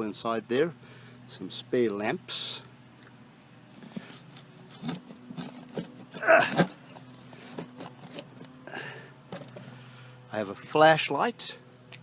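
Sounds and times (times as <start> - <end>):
rustling clatter: 3.7 - 8.6.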